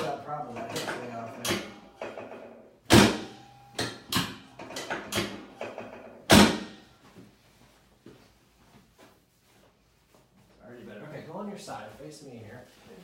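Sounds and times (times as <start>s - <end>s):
chiropractic table clacks: 0.0s - 7.4s.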